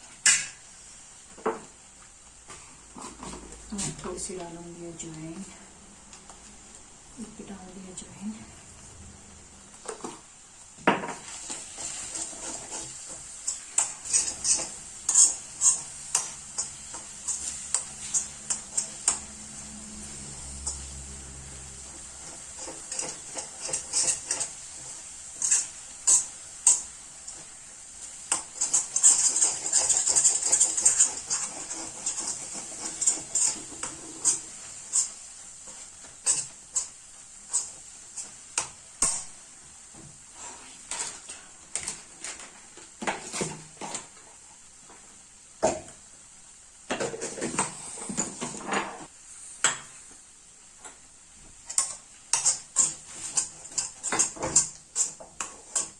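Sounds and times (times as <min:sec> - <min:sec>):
spoon scraping a wok: 0:11.1 - 0:39.3, 0:51.7 - 0:55.9.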